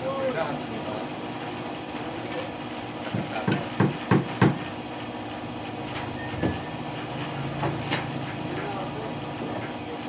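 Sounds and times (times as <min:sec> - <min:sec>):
sharp knocks: 0:03.5 - 0:04.6
low machine hum: 0:04.8 - 0:10.0.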